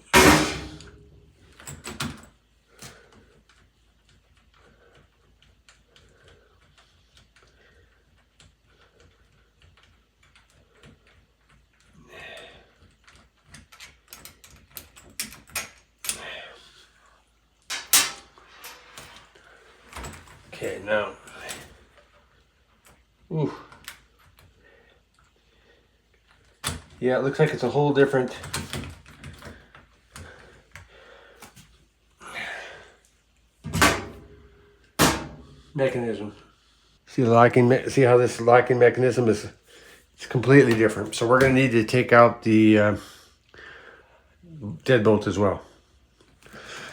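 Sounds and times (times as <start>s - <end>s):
loud knock: 0.1s - 0.9s
lock hardware clicks: 13.0s - 16.2s.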